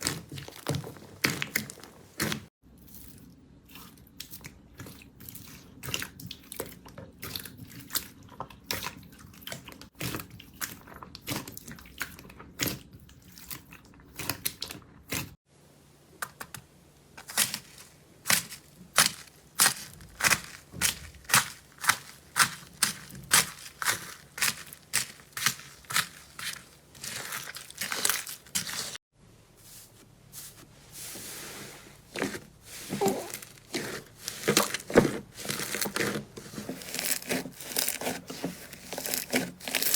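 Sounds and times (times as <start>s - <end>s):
slime crackling and popping: 17.2s - 29.0s, 36.8s - 39.9s.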